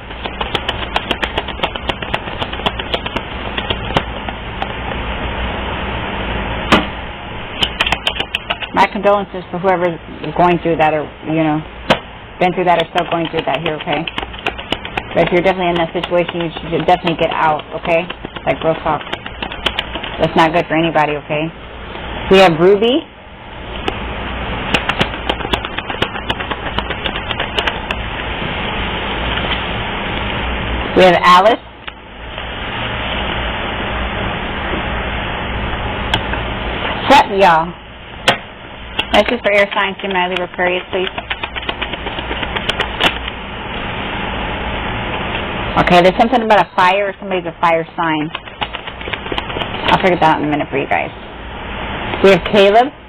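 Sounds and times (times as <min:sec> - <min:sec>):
playing cards shuffling: 0:00.0 - 0:04.4, 0:24.7 - 0:28.0, 0:39.0 - 0:43.3, 0:48.4 - 0:50.0
sharp clicks and snaps: 0:00.0 - 0:04.8, 0:07.6 - 0:08.8, 0:12.7 - 0:20.2, 0:24.7 - 0:28.0, 0:39.0 - 0:43.4, 0:48.3 - 0:50.0
steady background hiss: 0:00.0 - 0:53.0.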